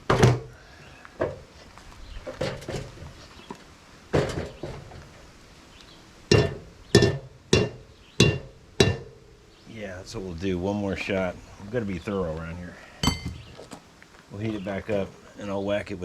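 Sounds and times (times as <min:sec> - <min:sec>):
hammer striking steel tube: 0:06.3 - 0:09.2.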